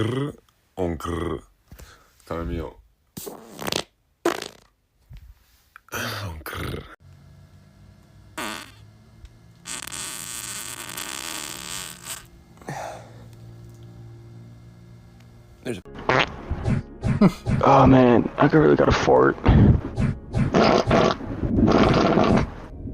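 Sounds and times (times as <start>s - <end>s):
farts: 3.2s - 4.8s, 8.4s - 8.8s, 9.6s - 12.3s, 16.0s - 16.4s, 20.5s - 22.7s
steady low hum: 6.1s - 15.9s.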